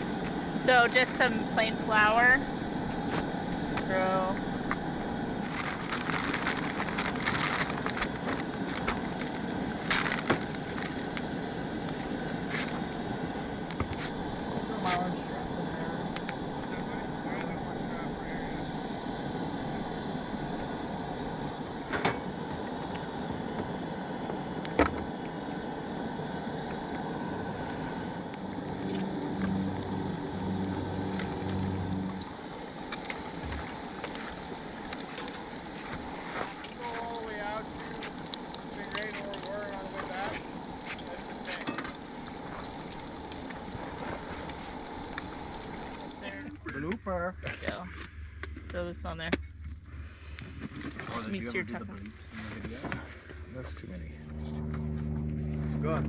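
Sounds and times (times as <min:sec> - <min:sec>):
sharp crackles: 0:00.0 - 0:12.8, 0:26.0 - 0:51.1
fish sizzling in hot oil: 0:00.0 - 0:15.1, 0:18.7 - 0:46.4
louder hiss: 0:00.0 - 0:46.7
engine pulsing hum: 0:00.0 - 0:56.0.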